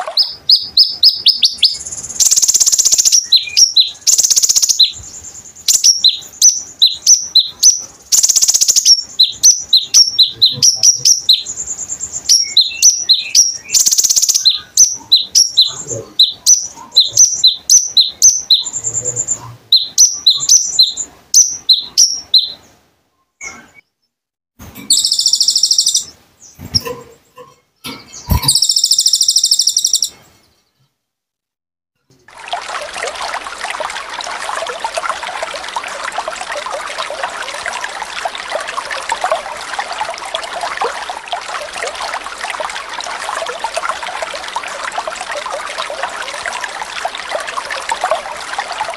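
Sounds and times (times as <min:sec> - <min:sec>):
bird chirping: 0:00.0 - 0:24.1, 0:24.8 - 0:30.9
buzzy bird trills: 0:24.9 - 0:30.2.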